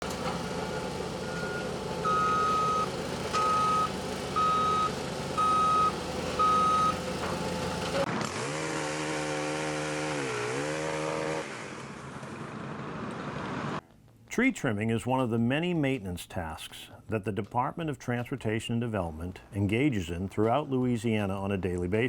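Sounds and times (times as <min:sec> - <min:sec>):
engine running: 0:00.0 - 0:13.8
truck reversing alarm beeping: 0:00.1 - 0:07.1.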